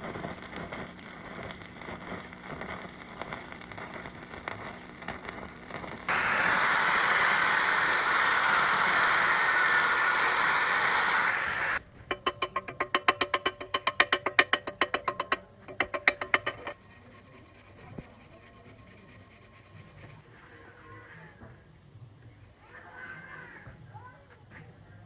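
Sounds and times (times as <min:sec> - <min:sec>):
loud steady hiss: 0:00.0 - 0:11.8
welding arc crackling: 0:00.0 - 0:20.2.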